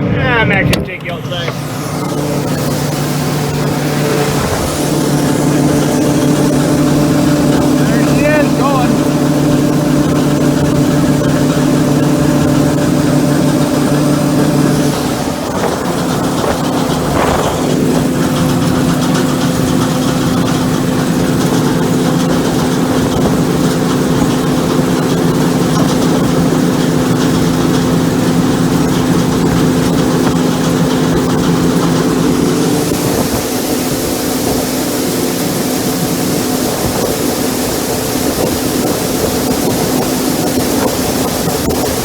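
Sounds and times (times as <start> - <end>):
combine harvester engine hum: 0.0 - 42.0
rushing hiss: 32.3 - 42.0.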